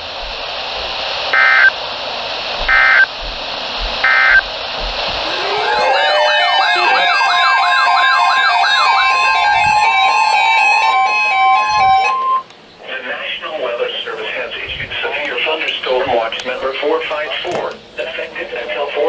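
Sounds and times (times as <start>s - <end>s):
radio hiss: 0.0s - 19.0s
steady alert tone: 5.2s - 12.4s
warbling siren-like alert sound: 5.2s - 12.5s.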